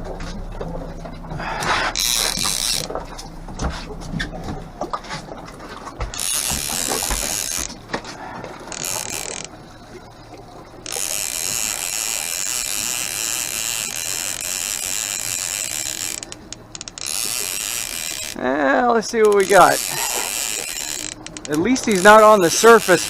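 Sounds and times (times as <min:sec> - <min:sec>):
fishing reel ratcheting: 0:02.0 - 0:03.0, 0:06.1 - 0:07.8, 0:08.7 - 0:09.5, 0:10.8 - 0:23.0.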